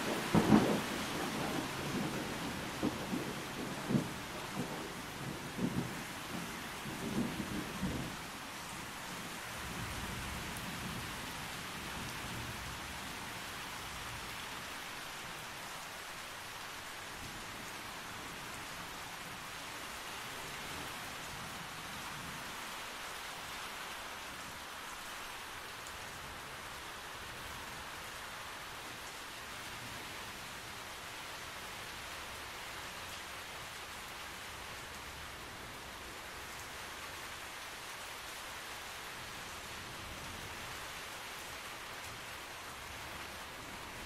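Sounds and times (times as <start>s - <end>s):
low rumble of thunder: 0.0s - 8.4s
rain on tree canopy: 0.0s - 44.0s.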